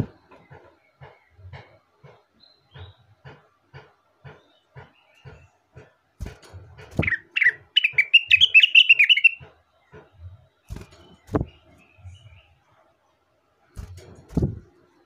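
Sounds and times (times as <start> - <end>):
bird singing warbling chirps: 7.0 - 9.4.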